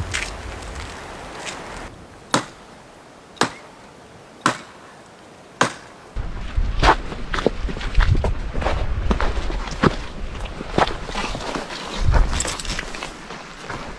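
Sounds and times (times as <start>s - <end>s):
rustling: 0.0s - 1.9s
wind noise on microphone: 0.0s - 2.2s, 6.2s - 13.9s
wood chopping strikes: 2.3s - 2.6s, 3.4s - 3.7s, 4.4s - 4.8s, 5.6s - 6.0s.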